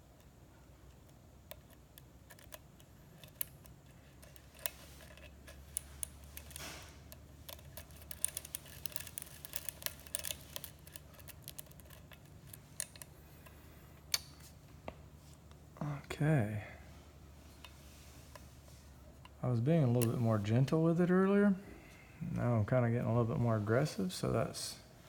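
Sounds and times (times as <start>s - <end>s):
lock pick clicks and scrapes: 0.9s - 14.3s.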